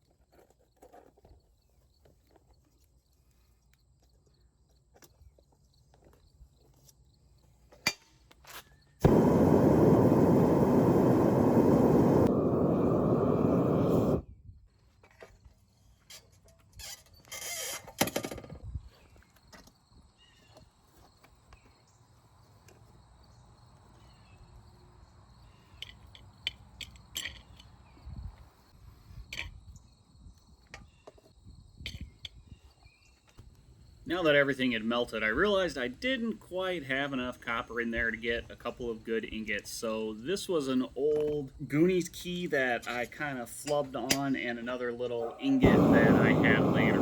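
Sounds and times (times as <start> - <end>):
furnace burner roaring: 9.0 - 14.2, 45.2 - 47.0.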